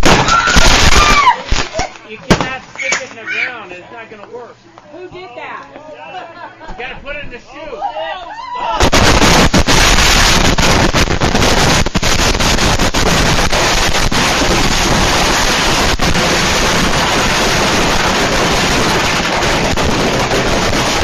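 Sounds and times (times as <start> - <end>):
sharp firework bangs: 0.0 - 3.0, 8.8 - 21.0
fireworks crackling: 0.0 - 3.1, 8.8 - 21.0.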